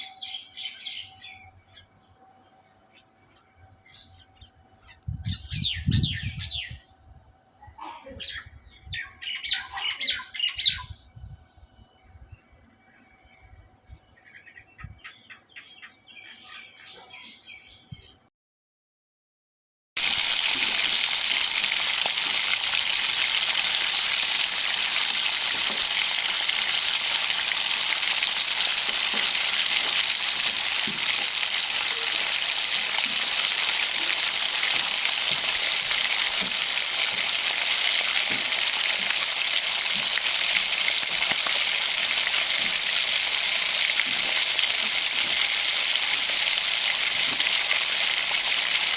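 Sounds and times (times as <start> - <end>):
faint bird chirps: 0.0 - 18.2
food sizzling in a pan: 20.0 - 48.9.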